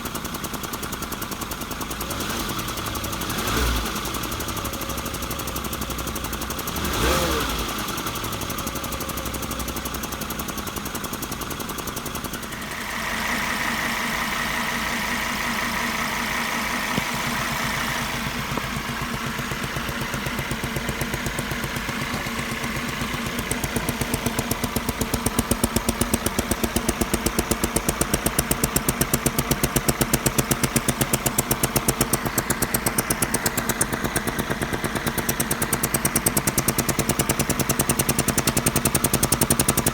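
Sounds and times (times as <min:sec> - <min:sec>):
car engine idling: 0:00.0 - 0:39.9
rapid even popping under car: 0:16.9 - 0:39.9.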